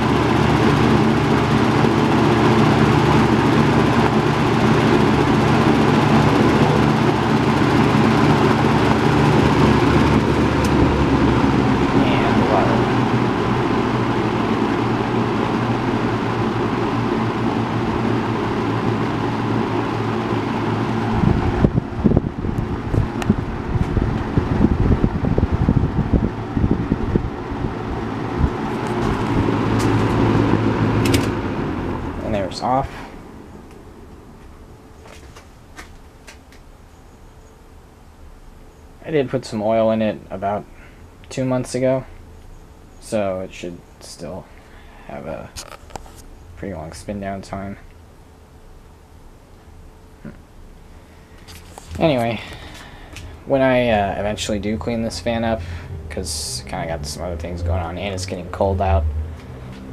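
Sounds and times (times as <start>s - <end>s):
box fan running: 0.0s - 59.9s
air rushing over microphone: 19.4s - 33.4s, 50.9s - 59.7s.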